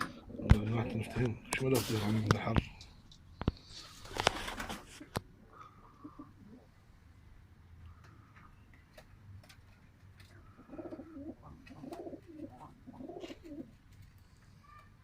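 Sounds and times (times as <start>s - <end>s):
pigeon cooing: 5.4s - 6.8s, 10.2s - 13.8s.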